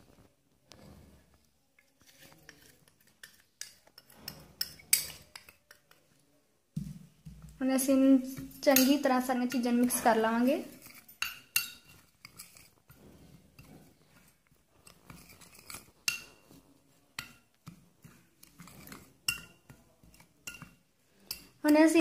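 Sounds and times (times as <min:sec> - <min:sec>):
spoon scraping: 0:00.1 - 0:06.2, 0:07.3 - 0:22.0
spoon clinking against vessel: 0:08.4 - 0:10.0, 0:10.8 - 0:12.7, 0:14.8 - 0:16.6, 0:17.2 - 0:21.7.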